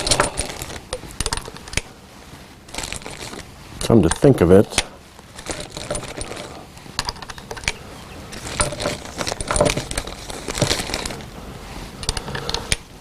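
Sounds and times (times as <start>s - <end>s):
small clicks and metallic clinks: 2.7s - 11.3s, 12.0s - 12.9s.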